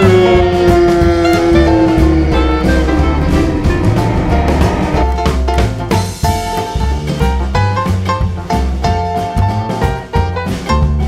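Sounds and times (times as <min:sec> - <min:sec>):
upbeat swing jazz instrumental: 0:05.2 - 0:11.0.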